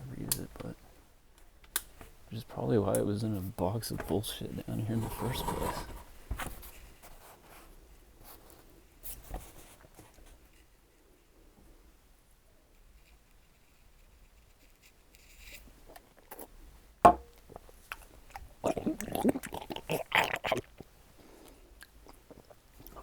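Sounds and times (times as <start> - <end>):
scraping and clattering: 4.8 - 6.1
sharp knock: 17.1 - 17.3.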